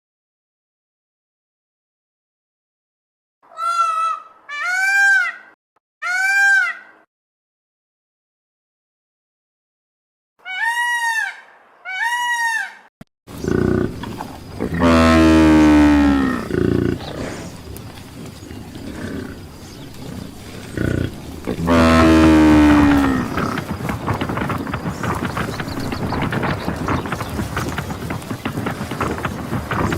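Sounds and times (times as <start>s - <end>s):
outdoor background noise: 10.4s - 29.9s
buffalo bellowing: 13.3s - 27.8s.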